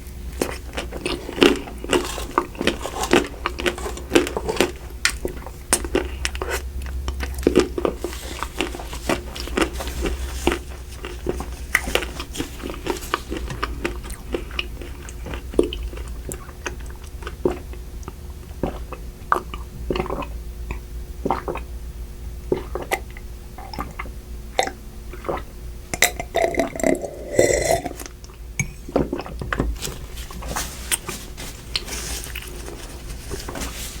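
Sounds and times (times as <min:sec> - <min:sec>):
chewing and biting ice cream: 0:00.0 - 0:21.7
steady low hum: 0:00.0 - 0:34.0
chocolate shell crunching: 0:00.4 - 0:16.2
wet mouth sounds: 0:00.4 - 0:21.7, 0:22.4 - 0:29.6.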